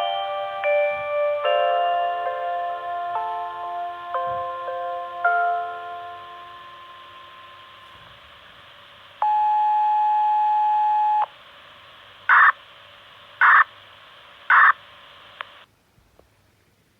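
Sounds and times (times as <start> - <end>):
radio control signal tones: 6.0 - 15.7
radio hiss: 7.4 - 15.7.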